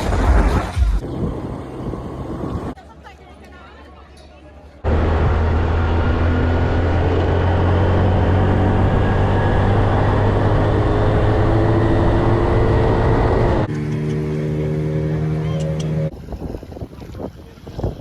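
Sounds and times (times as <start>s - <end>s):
vehicle engine running: 4.9s - 16.1s.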